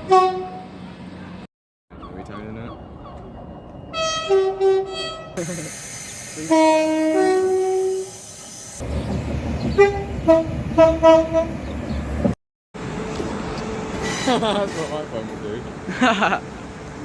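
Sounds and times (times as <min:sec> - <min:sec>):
train air horn blasts: 0:00.0 - 0:00.7, 0:03.9 - 0:05.4, 0:06.3 - 0:08.2, 0:09.8 - 0:11.6
train rumble: 0:02.2 - 0:17.0.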